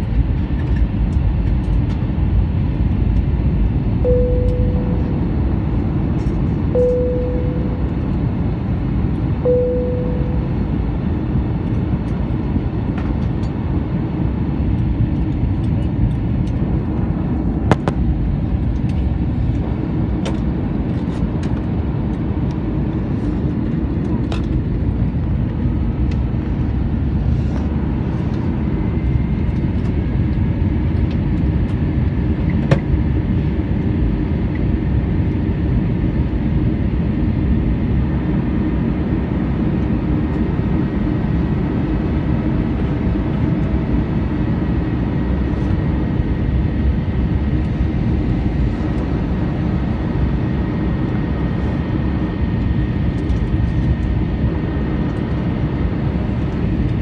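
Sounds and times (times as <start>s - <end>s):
jet engines rumbling: 0.0s - 57.0s
faint high whine: 4.0s - 8.4s, 9.2s - 11.2s.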